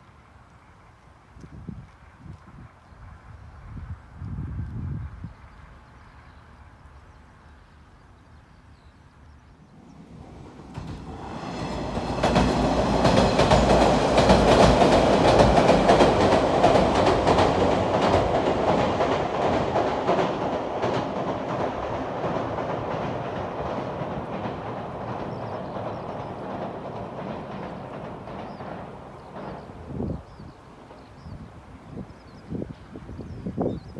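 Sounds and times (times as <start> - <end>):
train passing: 9.6 - 33.7
wheels clattering on rails: 9.8 - 31.6.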